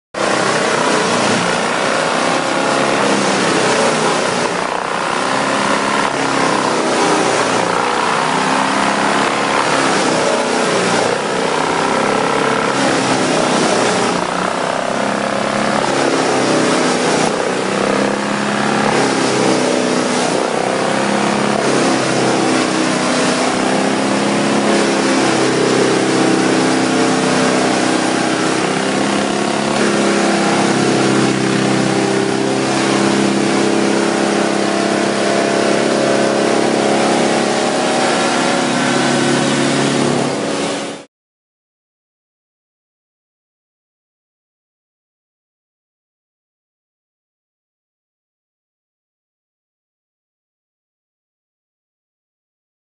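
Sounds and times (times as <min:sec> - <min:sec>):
wood chipper running: 0:00.2 - 0:41.1.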